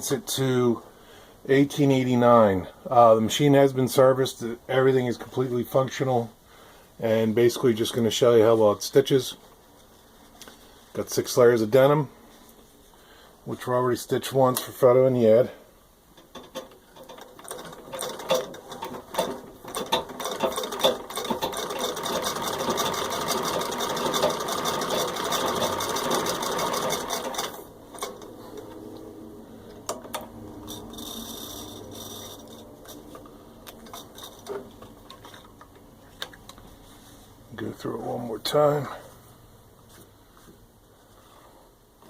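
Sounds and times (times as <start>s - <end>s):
sewing machine stitching: 16.4s - 28.3s, 30.7s - 32.6s.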